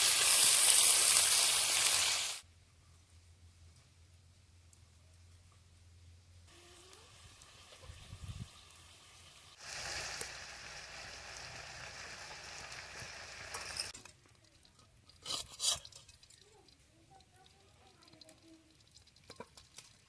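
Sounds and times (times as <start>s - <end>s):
hot oil sizzling in a pan: 0.0s - 2.4s, 6.5s - 14.0s, 15.2s - 20.0s.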